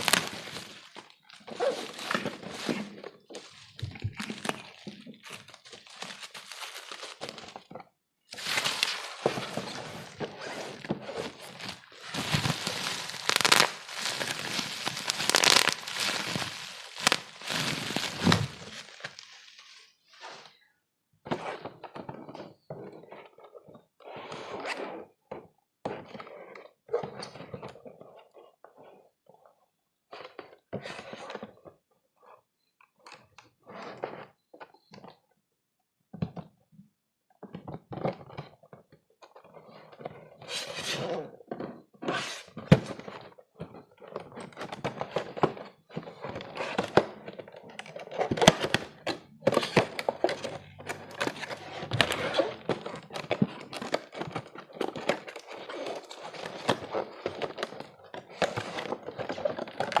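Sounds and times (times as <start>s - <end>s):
packaging rustling and crinkling: 0.0s - 20.2s, 42.9s - 60.0s.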